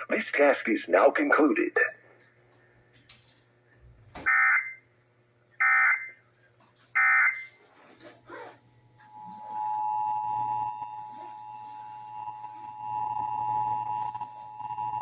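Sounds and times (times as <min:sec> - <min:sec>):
buzzy digital data tones: 0:09.0 - 0:15.0
steady two-tone alert signal: 0:09.0 - 0:15.0.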